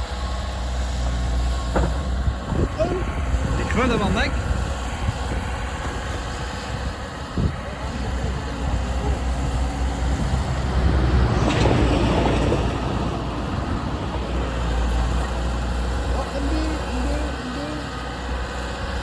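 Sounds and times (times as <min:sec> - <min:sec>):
excavator diesel engine running: 0:00.0 - 0:19.0
rough noisy clatter: 0:01.6 - 0:02.7, 0:08.9 - 0:13.9.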